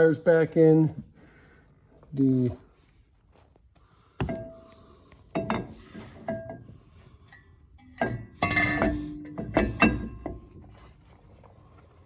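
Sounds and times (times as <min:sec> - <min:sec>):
metal tools clinking and knocking: 0:05.3 - 0:10.9.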